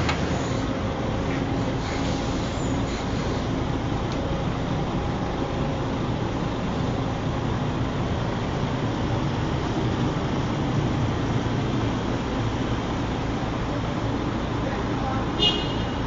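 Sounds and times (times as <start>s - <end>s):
road traffic noise: 0.0s - 16.0s.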